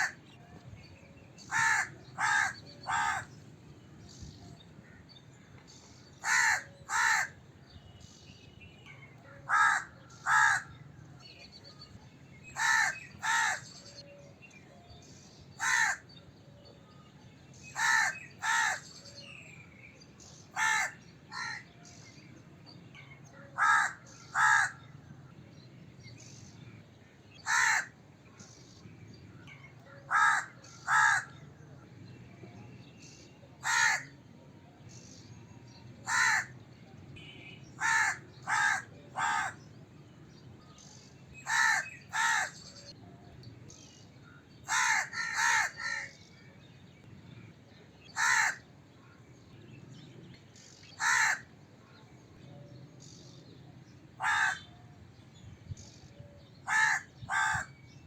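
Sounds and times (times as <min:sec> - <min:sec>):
crow cawing: 0:01.5 - 0:03.3, 0:06.2 - 0:07.4, 0:09.5 - 0:10.7, 0:12.6 - 0:13.6, 0:15.6 - 0:16.0, 0:17.8 - 0:18.8, 0:20.6 - 0:21.6, 0:23.6 - 0:24.8, 0:27.4 - 0:27.9, 0:30.1 - 0:31.4, 0:33.6 - 0:34.1, 0:36.1 - 0:36.5, 0:37.8 - 0:39.6, 0:41.5 - 0:42.6, 0:44.7 - 0:46.1, 0:48.2 - 0:48.6, 0:51.0 - 0:51.4, 0:54.2 - 0:54.6, 0:56.7 - 0:57.7.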